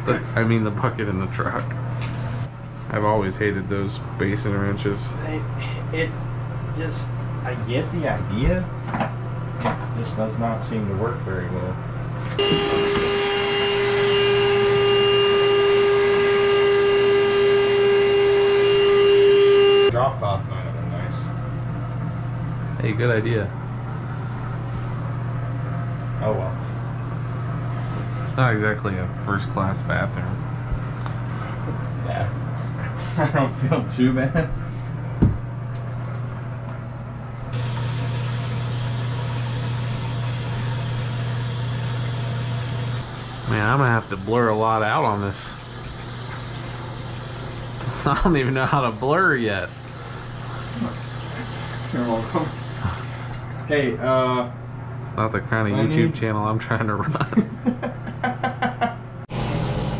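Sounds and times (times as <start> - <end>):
low mechanical hum: 0.0 - 59.9
electric motor whining: 12.4 - 19.9.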